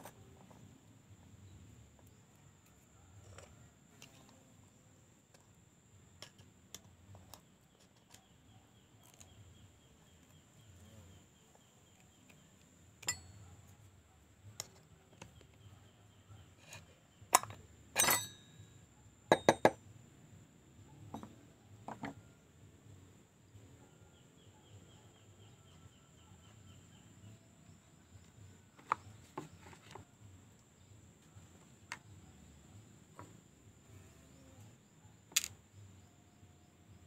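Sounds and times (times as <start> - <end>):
metal hand tools clinking: 13.0 - 13.4, 17.4 - 18.6.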